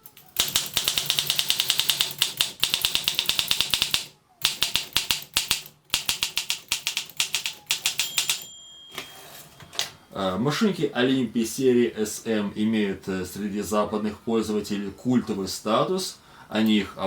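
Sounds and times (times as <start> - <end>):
typewriter keys clacking: 0.0 - 8.5
typewriter margin bell ringing: 0.0 - 9.8.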